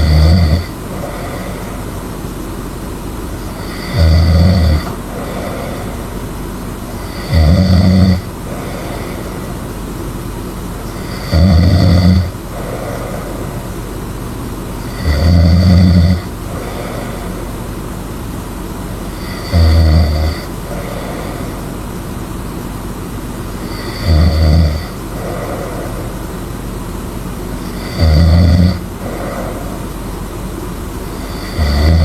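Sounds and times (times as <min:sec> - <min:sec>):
person snoring loudly: 0:00.0 - 0:02.0, 0:03.4 - 0:06.2, 0:06.9 - 0:09.6, 0:10.9 - 0:13.8, 0:14.8 - 0:17.7, 0:19.1 - 0:21.8, 0:23.6 - 0:26.4, 0:27.6 - 0:30.0, 0:31.0 - 0:32.0
steady background hiss: 0:00.0 - 0:32.0.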